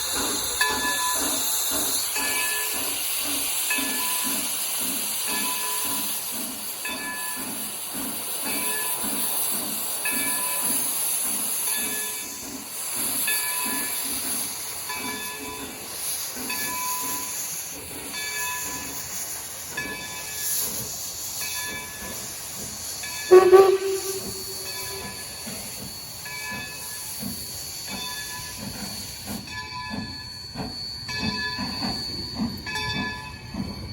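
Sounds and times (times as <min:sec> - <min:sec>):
hiss of steam: 0:00.0 - 0:32.6
steam locomotive exhaust chuffs: 0:00.0 - 0:33.9
locomotive whistle blast: 0:23.3 - 0:25.4.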